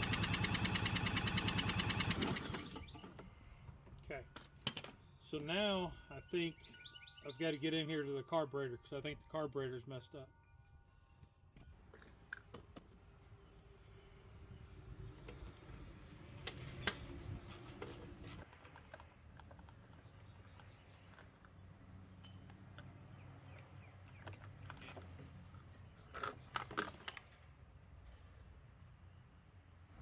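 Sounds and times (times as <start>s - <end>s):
hand tools clicking and clinking: 2.4s - 7.4s, 10.1s - 13.0s.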